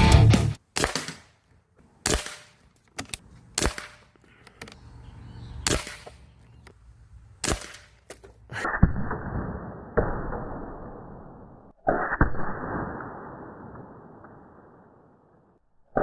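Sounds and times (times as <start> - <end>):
air rifle shots: 0.7 - 1.4, 2.0 - 2.6, 3.5 - 4.1, 5.6 - 6.2, 7.4 - 8.0.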